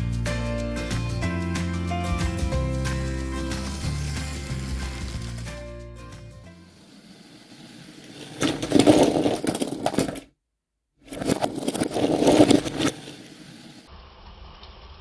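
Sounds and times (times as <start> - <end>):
toy train motor whirring: 3.0 - 5.7.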